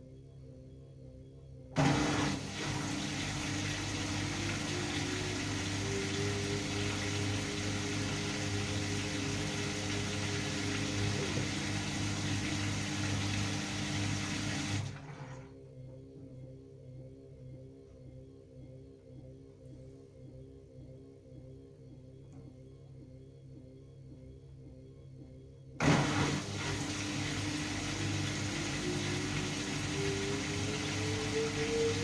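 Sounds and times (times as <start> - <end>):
low machine hum: 0.0 - 32.0
water rushing in washing machine: 1.8 - 15.6, 25.8 - 32.0.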